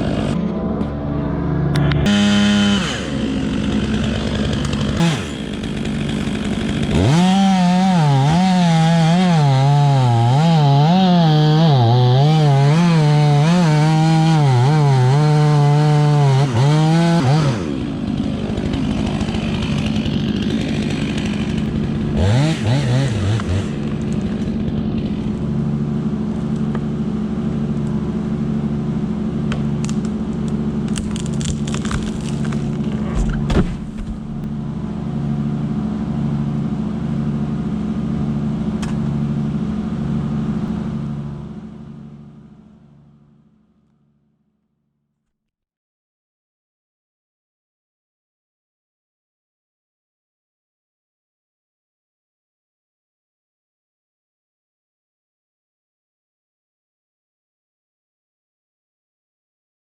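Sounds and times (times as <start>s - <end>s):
chainsaw engine revving: 0.0s - 0.6s, 1.4s - 37.7s.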